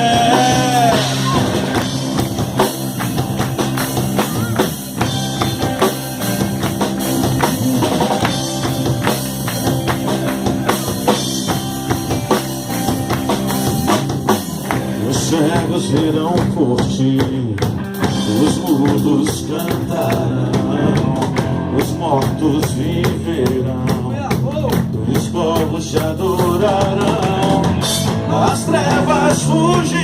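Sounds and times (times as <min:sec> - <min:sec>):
drum kit hits: 0:00.0 - 0:29.8
rock band playing: 0:00.0 - 0:30.0.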